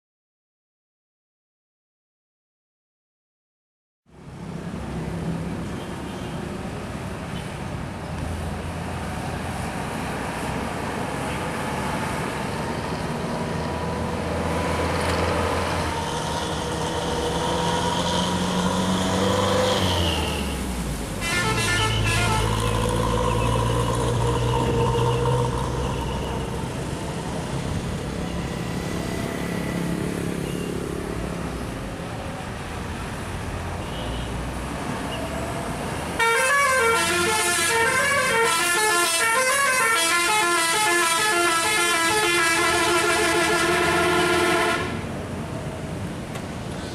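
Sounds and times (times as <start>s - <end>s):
bus diesel engine revving: 8.7s - 30.2s, 35.4s - 46.0s
multi-tone bus horn melody: 21.2s - 26.5s, 36.2s - 45.1s.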